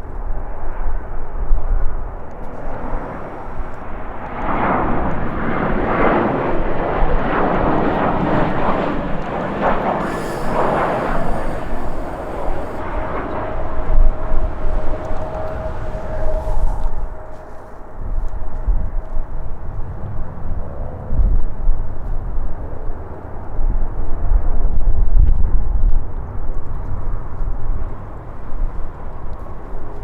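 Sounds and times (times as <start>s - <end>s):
jet engines passing: 1.9s - 18.3s.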